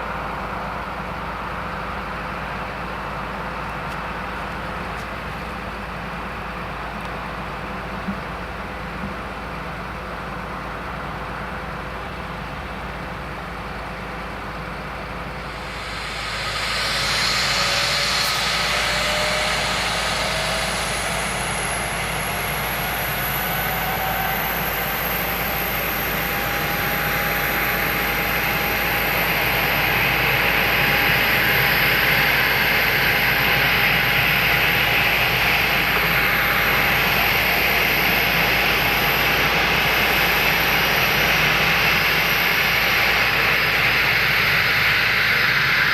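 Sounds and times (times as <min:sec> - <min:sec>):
jet engines whining: 0:12.4 - 0:45.9.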